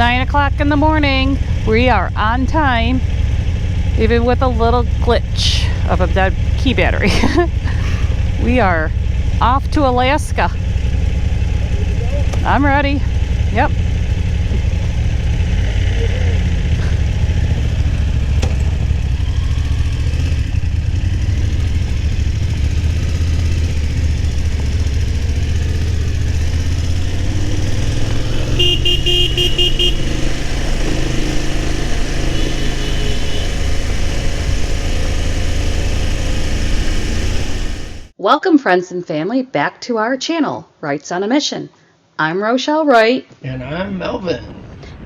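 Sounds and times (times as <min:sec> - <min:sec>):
motorcycle engine running: 0:00.0 - 0:38.2
horn short beeps: 0:28.4 - 0:30.2, 0:32.2 - 0:33.7.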